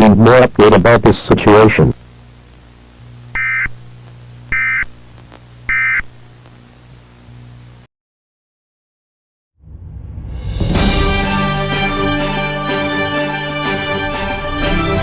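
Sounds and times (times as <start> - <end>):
faint low hum: 0.0 - 7.9
electronic data bursts: 3.3 - 6.3.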